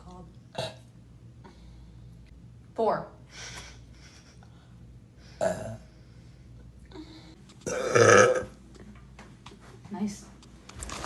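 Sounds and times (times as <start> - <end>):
woman burping: 5.4 - 5.8, 7.7 - 8.6.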